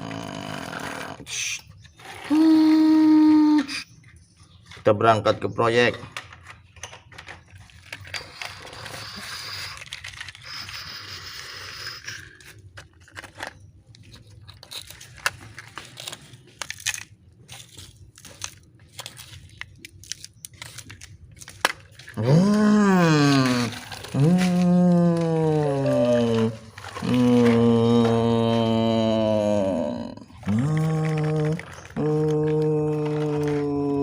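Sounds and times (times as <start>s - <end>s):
toy truck scraping: 0.6s - 2.5s, 7.4s - 16.3s, 21.6s - 28.2s.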